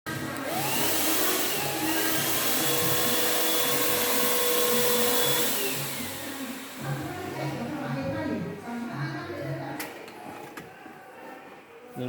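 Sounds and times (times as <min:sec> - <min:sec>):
snow machine blower hissing: 0:00.5 - 0:07.2.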